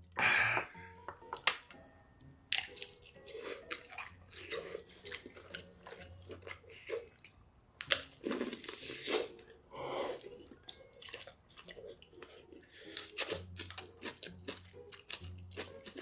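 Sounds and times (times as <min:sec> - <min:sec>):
person biting and chewing: 0:02.5 - 0:09.4, 0:12.9 - 0:16.0.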